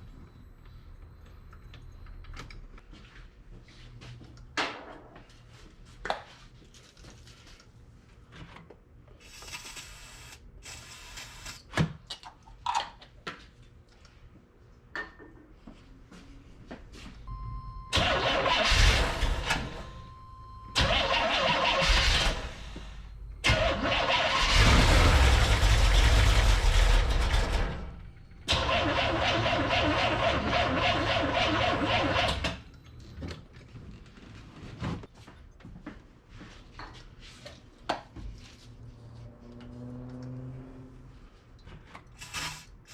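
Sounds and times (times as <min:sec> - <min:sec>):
engine starter cranking: 0:17.9 - 0:20.1, 0:20.8 - 0:22.8, 0:23.4 - 0:32.6.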